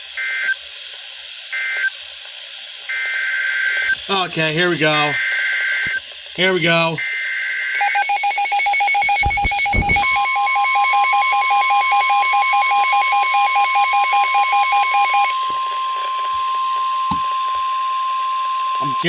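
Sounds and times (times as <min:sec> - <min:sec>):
pulsing electronic beep alarm: 0:07.2 - 0:15.4
steady single-pitch warning tone: 0:07.8 - 0:19.0.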